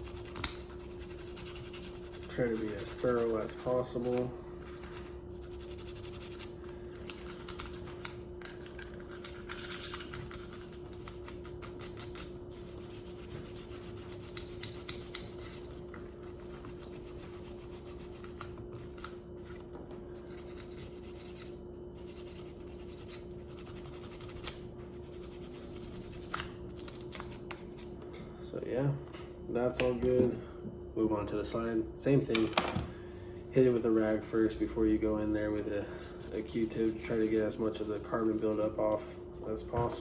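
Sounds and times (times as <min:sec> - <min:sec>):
brush scrubbing plastic: 0:00.0 - 0:19.6, 0:33.6 - 0:40.0.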